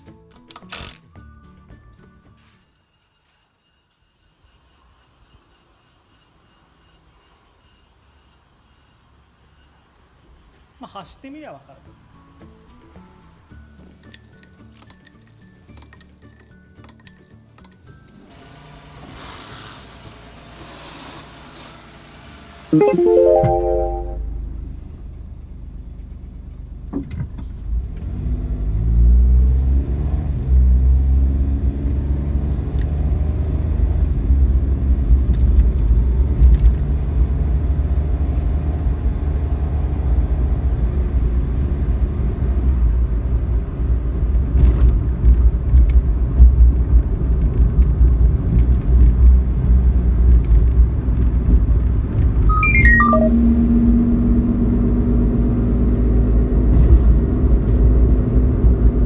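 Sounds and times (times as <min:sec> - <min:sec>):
car engine pulling away: 0:27.6 - 0:34.9.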